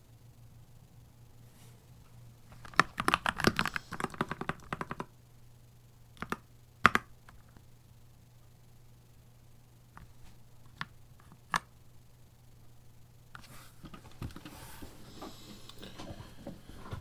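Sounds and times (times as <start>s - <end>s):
mechanical keyboard typing: 2.6s - 5.1s, 6.2s - 7.6s.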